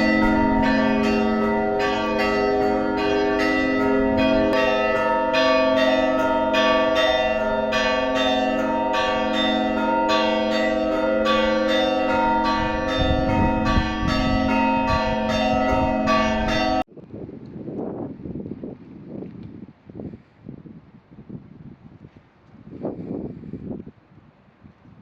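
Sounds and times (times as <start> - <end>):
church bells pealing: 0.0 - 16.9
faint wind: 0.0 - 25.0.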